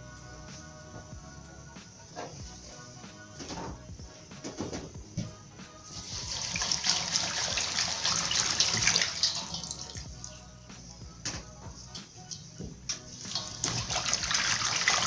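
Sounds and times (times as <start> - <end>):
background music: 0.0 - 15.0
water running from a tap: 6.0 - 10.1, 13.1 - 15.0.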